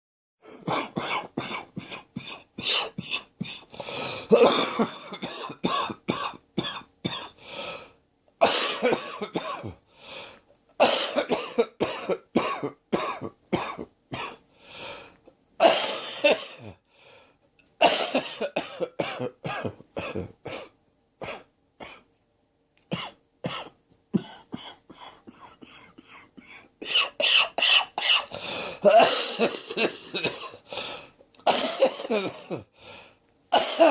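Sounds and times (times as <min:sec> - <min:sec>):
breathing between coughs: 0:00.4 - 0:05.5, 0:23.6 - 0:33.9
person coughing harshly: 0:00.5 - 0:07.4, 0:08.4 - 0:09.8, 0:10.8 - 0:14.4, 0:15.6 - 0:16.8, 0:17.8 - 0:22.1, 0:22.9 - 0:32.7, 0:33.5 - 0:33.9.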